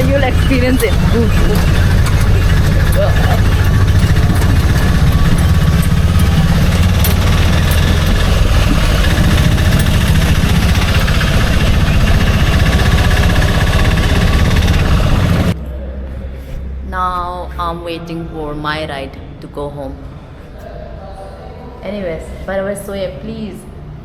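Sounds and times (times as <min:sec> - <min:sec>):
auto-rickshaw engine running: 0:00.0 - 0:15.6.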